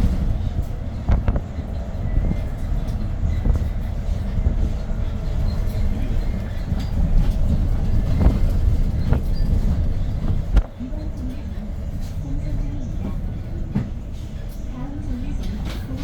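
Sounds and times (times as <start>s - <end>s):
body rattles and knocks: 0.0s - 10.8s
bus engine and road rumble: 0.0s - 16.0s.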